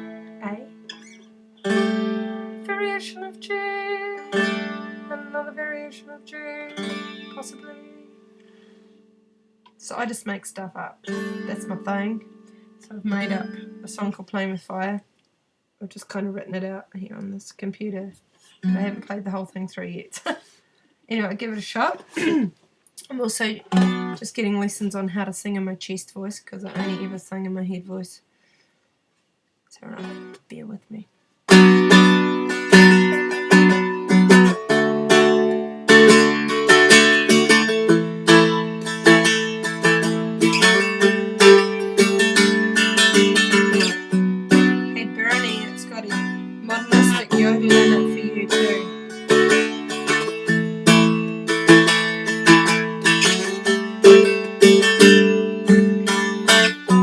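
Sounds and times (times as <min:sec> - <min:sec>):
strummed dulcimer: 0:00.0 - 0:08.9, 0:10.8 - 0:14.1, 0:23.7 - 0:24.2, 0:26.7 - 0:27.2, 0:31.5 - 0:57.0.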